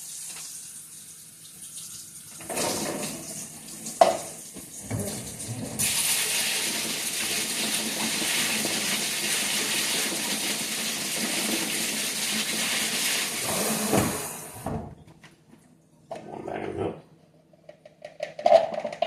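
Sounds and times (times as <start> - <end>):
tap water running onto grapes: 5.8 - 13.5.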